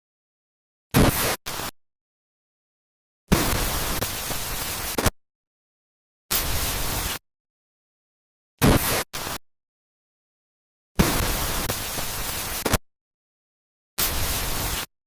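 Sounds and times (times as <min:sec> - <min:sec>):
hissing static bursts: 0:01.0 - 0:01.7, 0:03.3 - 0:05.1, 0:06.3 - 0:07.2, 0:08.6 - 0:09.4, 0:11.0 - 0:12.8, 0:14.0 - 0:14.9.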